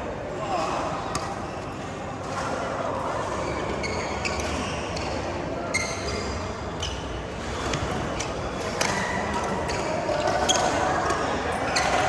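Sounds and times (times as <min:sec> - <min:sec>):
background noise: 0:00.0 - 0:12.0
rackets hitting shuttlecock: 0:08.6 - 0:12.0.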